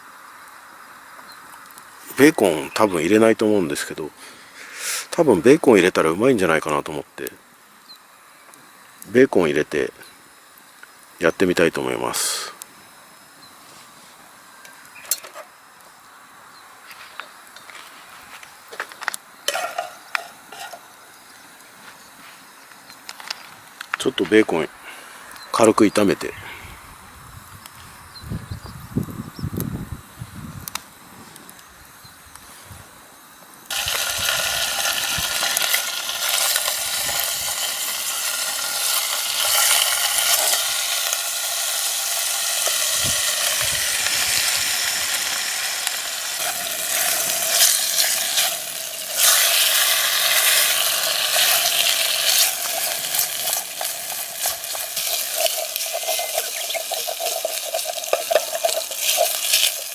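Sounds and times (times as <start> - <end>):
bacon sizzling in a pan: 10.3 - 13.3, 18.4 - 23.8, 33.2 - 59.9
utensil scraping a pan: 19.5 - 20.9, 46.4 - 59.9.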